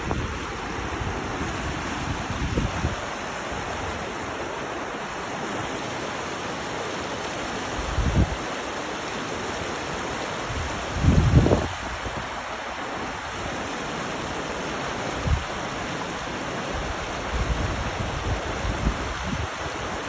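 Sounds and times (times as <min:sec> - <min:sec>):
wind gusts on microphone: 0:00.0 - 0:04.2, 0:07.6 - 0:08.6, 0:10.4 - 0:13.8, 0:15.1 - 0:15.7, 0:16.7 - 0:20.0
water rushing: 0:00.0 - 0:20.0.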